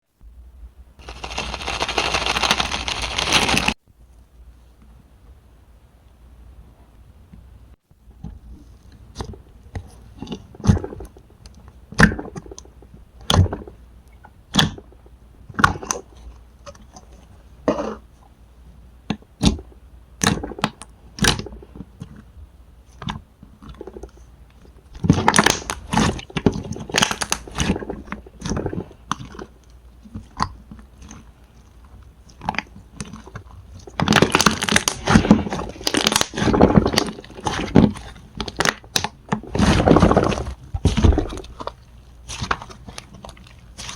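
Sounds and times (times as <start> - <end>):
slime dense crackling: 1.0 - 3.8, 32.3 - 43.9.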